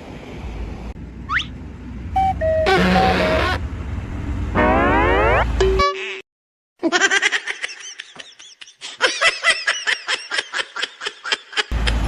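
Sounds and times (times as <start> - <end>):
high-pitched laughter: 6.8 - 12.0.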